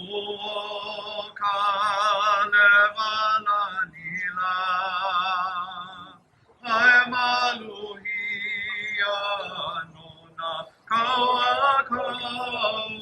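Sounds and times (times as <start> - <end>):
person singing with vibrato: 0.0 - 13.0.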